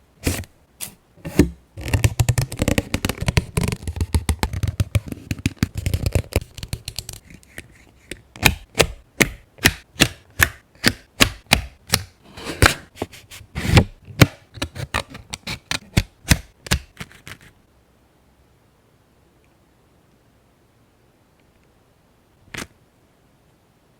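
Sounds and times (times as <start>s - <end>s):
paper rustling: 0.2s - 7.5s.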